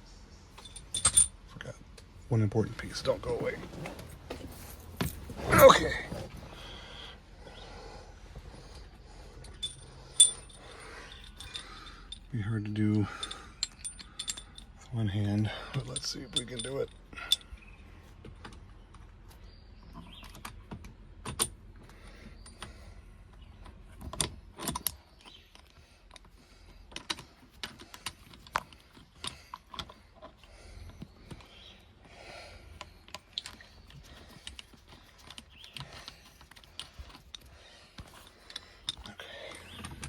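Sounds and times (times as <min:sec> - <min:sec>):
metal tools clicking and clinking: 0:00.6 - 0:01.4, 0:09.4 - 0:12.3, 0:13.0 - 0:14.8, 0:15.4 - 0:17.6.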